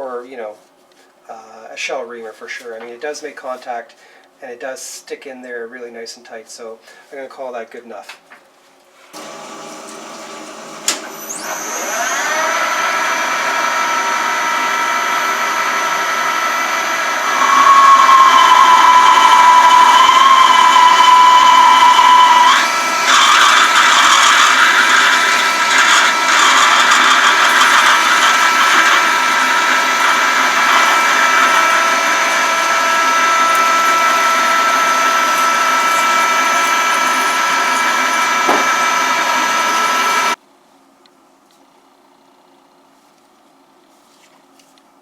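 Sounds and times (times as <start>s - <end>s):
machine tool high whine: 9.2s - 40.4s
rough cutting noise: 16.8s - 40.4s.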